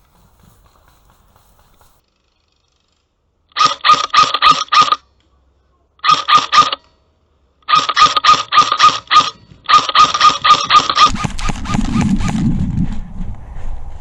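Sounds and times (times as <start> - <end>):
rough rustling noise: 0.0 - 3.2, 9.4 - 14.0
airsoft gun shots: 7.7 - 12.5.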